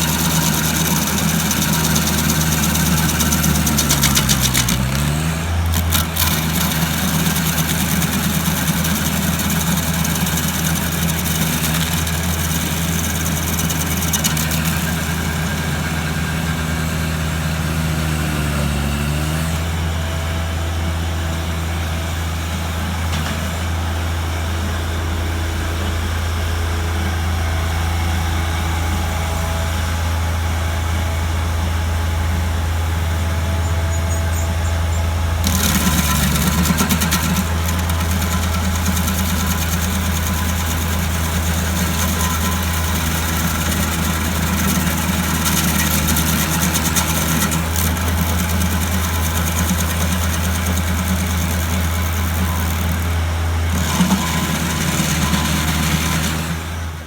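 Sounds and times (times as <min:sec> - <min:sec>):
engine running: 0:00.0 - 0:57.0.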